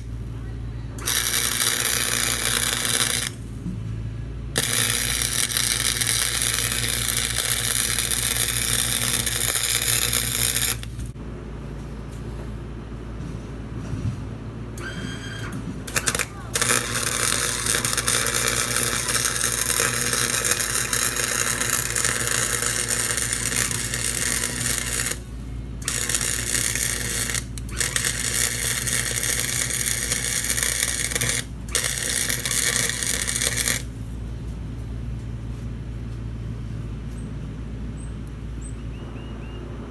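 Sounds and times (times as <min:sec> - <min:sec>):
low steady hum: 0:00.0 - 0:39.9
arc welding crackling sizzle: 0:01.0 - 0:03.5, 0:04.6 - 0:11.2, 0:15.9 - 0:34.0.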